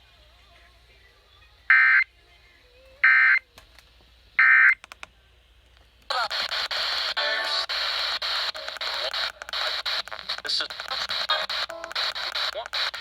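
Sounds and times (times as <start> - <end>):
radio static hiss: 6.1 - 13.0.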